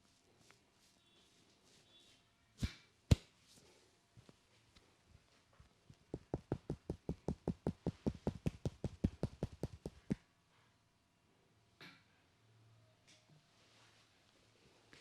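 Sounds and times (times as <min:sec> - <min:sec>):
rapid hand tapping on head: 0:06.0 - 0:10.2.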